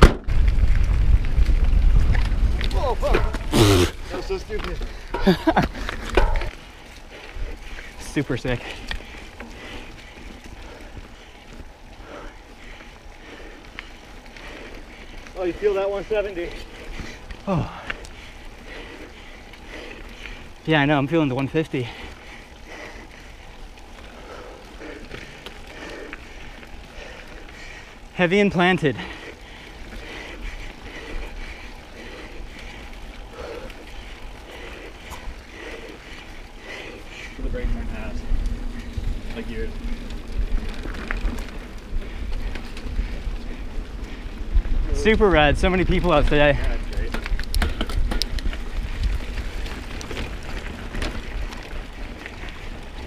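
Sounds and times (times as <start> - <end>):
wind on microphone: 0.0 - 4.1
tyre rumble: 0.0 - 6.6
wind rumbling on microphone: 0.0 - 20.6, 29.0 - 53.0
bike clicks and rattles: 0.0 - 53.0
tyres crunching on dirt: 0.0 - 53.0.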